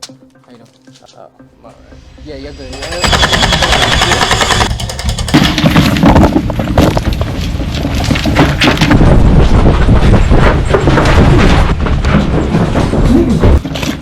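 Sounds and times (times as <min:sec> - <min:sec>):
running footsteps: 0:02.8 - 0:14.0.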